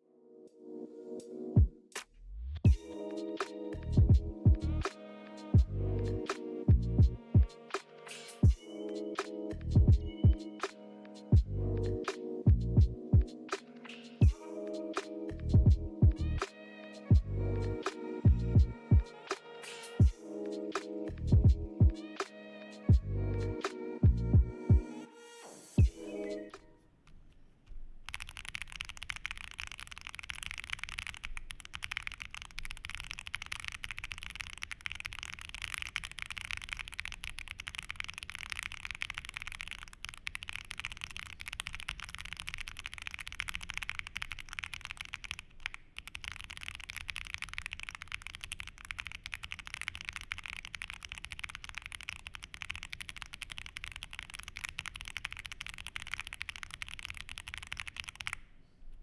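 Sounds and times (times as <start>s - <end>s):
fast typing on mechanical keyboard: 27.9s - 58.4s.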